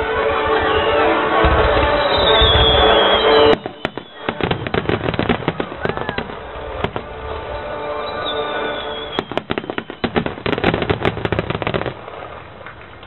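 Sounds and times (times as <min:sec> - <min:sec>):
music: 0:00.0 - 0:12.4
fireworks crackling and popping: 0:00.4 - 0:13.0.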